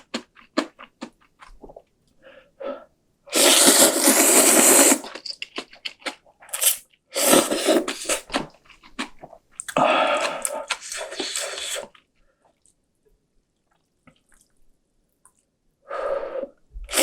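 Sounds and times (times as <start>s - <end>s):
wet chewing: 0.0s - 1.9s, 3.4s - 12.8s
slurping noodles: 3.3s - 5.4s, 6.5s - 8.3s, 9.8s - 11.9s.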